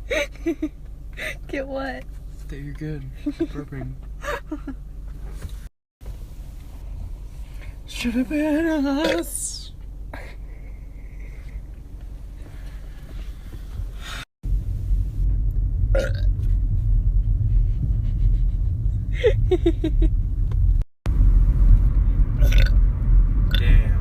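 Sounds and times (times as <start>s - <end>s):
person burping: 9.0s - 9.3s, 16.0s - 16.3s, 22.4s - 22.7s
loud steady low drone: 14.4s - 24.0s.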